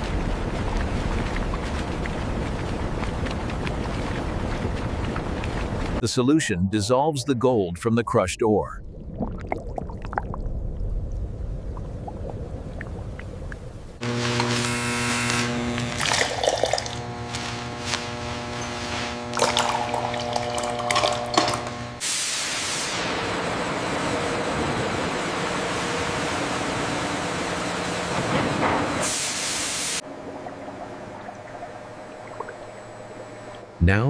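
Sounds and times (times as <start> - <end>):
hum of held tones: 14.0 - 22.0, 30.1 - 34.0
liquid pouring and spraying: 16.0 - 17.0, 18.7 - 23.0, 29.0 - 30.1.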